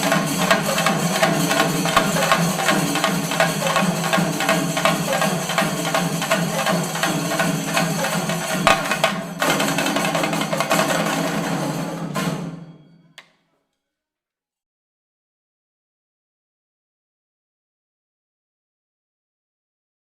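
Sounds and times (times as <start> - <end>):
drums beaten with sticks: 0.0 - 12.8
hand cymbals: 0.0 - 13.4.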